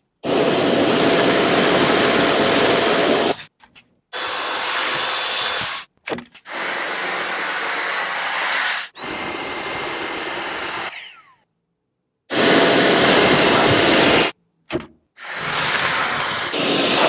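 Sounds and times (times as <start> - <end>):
vacuum cleaner whine: 0.2 - 3.4, 4.2 - 5.8, 6.5 - 11.2, 12.3 - 14.3, 15.2 - 17.0.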